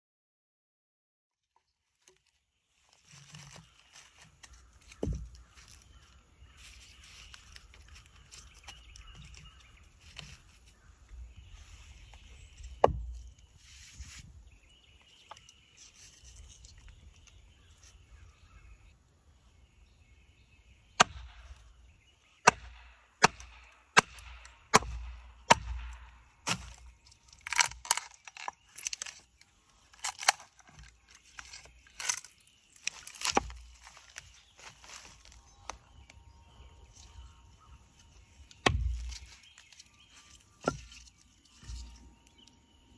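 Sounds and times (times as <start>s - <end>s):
axe chopping wood: 12.8s - 13.2s, 21.0s - 21.6s, 22.4s - 28.6s, 32.8s - 33.9s, 38.6s - 39.3s, 40.6s - 40.9s.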